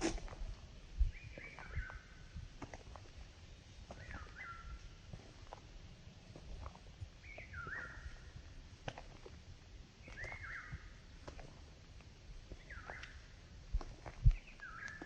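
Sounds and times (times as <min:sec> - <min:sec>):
bird calling: 0:04.0 - 0:04.8, 0:07.2 - 0:08.3, 0:10.0 - 0:10.9, 0:12.6 - 0:13.2, 0:14.4 - 0:15.0.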